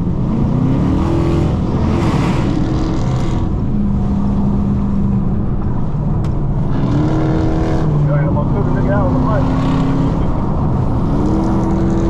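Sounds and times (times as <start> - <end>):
car engine droning: 0.0 - 12.0
road noise: 0.0 - 12.0.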